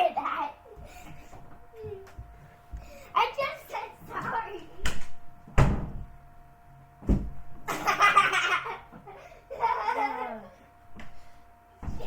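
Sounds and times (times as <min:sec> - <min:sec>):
thump: 0:05.6 - 0:06.1, 0:07.0 - 0:07.4
person laughing: 0:07.7 - 0:10.6.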